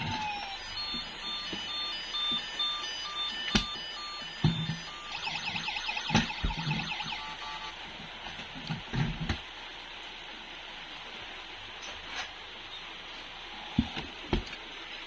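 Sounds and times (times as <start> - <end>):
electronic beeping tune: 0.0 - 7.7
fast warbling siren: 0.0 - 7.7.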